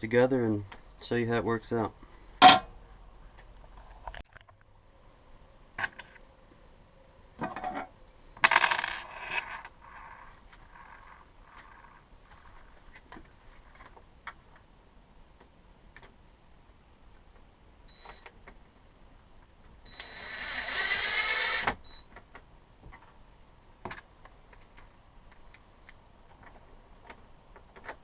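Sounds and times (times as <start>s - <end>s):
cordless drill driving a screw: 19.9s - 21.8s.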